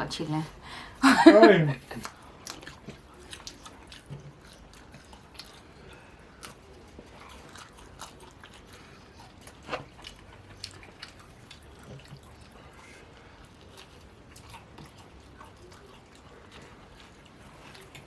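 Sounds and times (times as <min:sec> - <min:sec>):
chewing and biting: 0:01.9 - 0:18.0.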